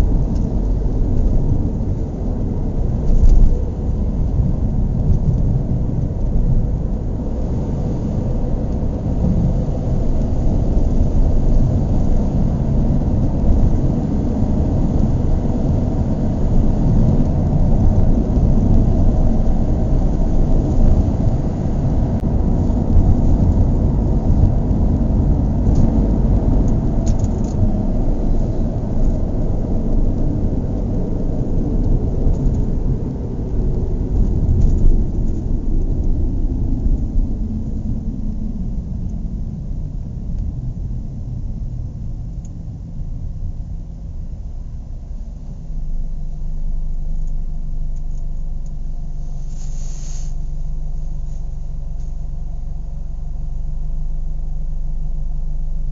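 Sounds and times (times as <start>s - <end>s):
car engine running: 0.0s - 55.9s.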